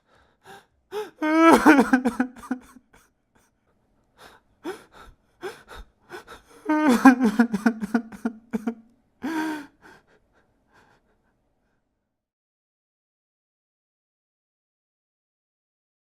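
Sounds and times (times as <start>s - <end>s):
sniffling gasping breaths: 0.0s - 1.2s, 4.2s - 7.7s, 9.2s - 11.4s
man crying and sobbing: 0.9s - 3.1s, 4.6s - 10.1s.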